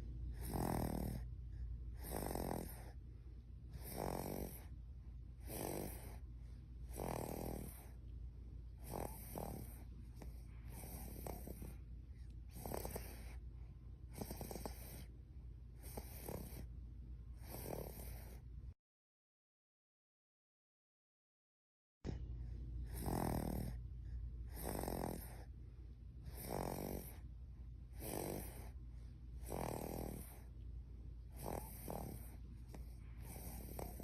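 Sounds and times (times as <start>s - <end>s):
person snoring: 0.3s - 1.2s, 2.0s - 3.0s, 3.7s - 4.7s, 5.4s - 6.2s, 6.9s - 8.0s, 8.8s - 11.8s, 12.5s - 13.4s, 14.1s - 15.1s, 15.8s - 16.7s, 17.4s - 18.4s, 22.9s - 23.8s, 24.5s - 25.5s, 26.3s - 27.2s, 28.0s - 28.7s, 29.4s - 30.5s, 31.3s - 34.0s.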